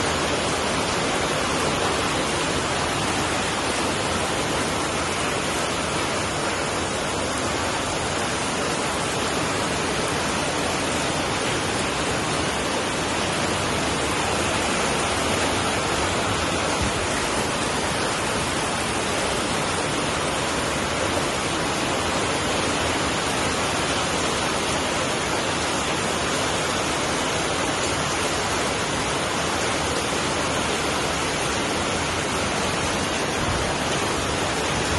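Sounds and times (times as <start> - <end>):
heavy rain hissing: 0.0 - 34.9.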